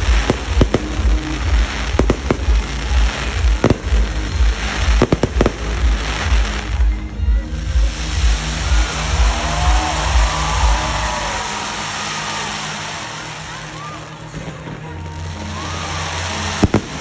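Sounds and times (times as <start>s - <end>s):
fireworks bangs: 0.0s - 7.1s, 14.3s - 17.0s
fireworks crackling: 0.0s - 17.0s.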